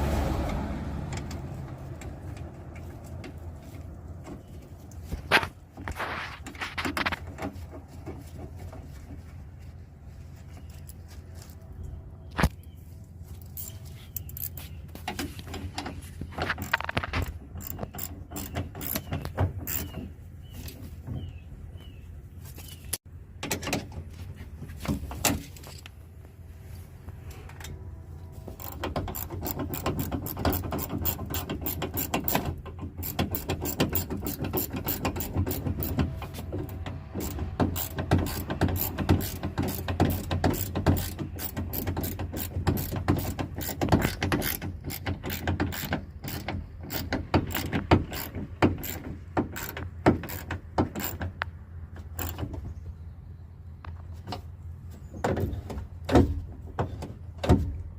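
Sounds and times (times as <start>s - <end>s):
scattered clicks and knocks: 4.2s - 9.2s, 13.4s - 21.3s, 28.5s - 52.7s
hand ratchet clicking: 28.6s - 36.0s, 37.2s - 51.2s.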